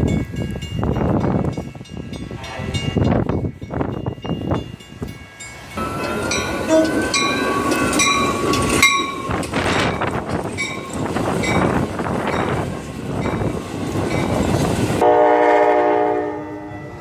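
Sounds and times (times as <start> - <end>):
train cars rumbling and clattering: 0.0 - 16.1
train horn: 5.8 - 7.4, 15.0 - 17.0.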